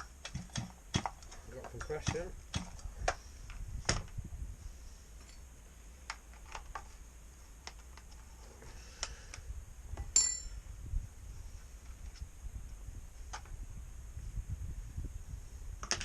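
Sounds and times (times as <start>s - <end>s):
sharp metallic clink: 10.1s - 10.6s.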